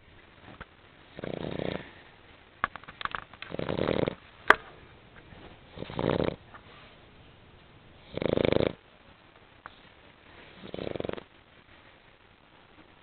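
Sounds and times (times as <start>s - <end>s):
dog snoring: 1.1s - 1.9s, 3.5s - 4.2s, 5.7s - 6.4s, 8.0s - 8.8s, 10.5s - 11.3s.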